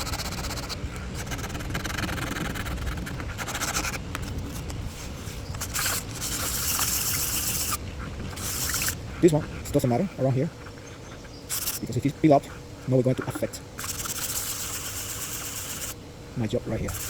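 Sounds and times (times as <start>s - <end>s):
sandpaper rasping: 0.0s - 7.8s, 8.4s - 9.0s, 11.5s - 12.0s, 13.8s - 16.0s.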